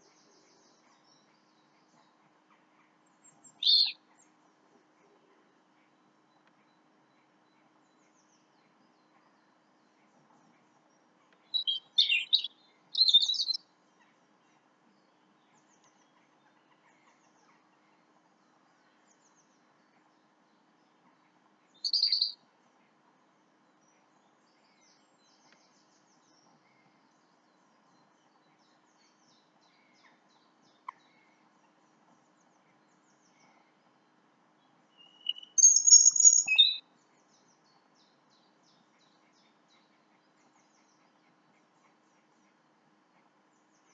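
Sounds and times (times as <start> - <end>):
birds chirping: 3.2 - 4.0, 5.3 - 13.6, 21.7 - 22.4, 25.3 - 41.2.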